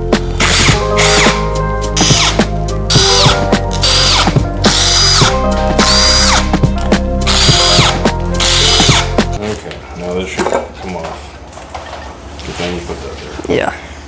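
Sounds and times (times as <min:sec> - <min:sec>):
bass line: 0:00.0 - 0:09.4.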